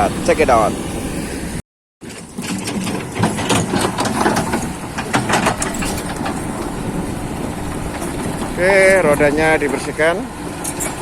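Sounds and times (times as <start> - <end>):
excavator diesel engine running: 0.0 - 11.0
clatter of knocks and clicks: 2.0 - 6.8.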